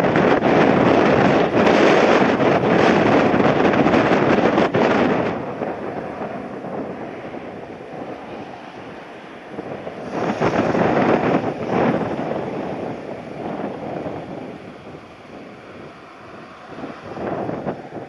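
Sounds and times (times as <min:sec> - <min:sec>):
wind buffeting microphone: 0:00.0 - 0:18.0.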